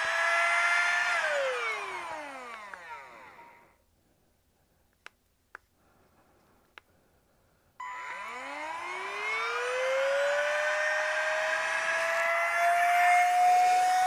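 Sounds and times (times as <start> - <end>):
vacuum motor whine: 0.0 - 3.8, 7.8 - 14.0.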